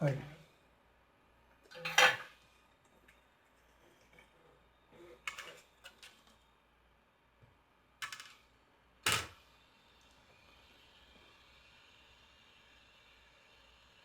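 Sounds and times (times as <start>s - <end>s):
metal tools clicking on workbench: 8.0s - 8.4s.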